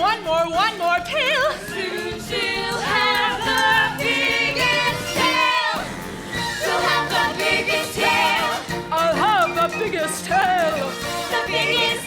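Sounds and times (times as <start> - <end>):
musical accompaniment: 0.0 - 12.0
voices singing with vibrato: 0.1 - 12.0.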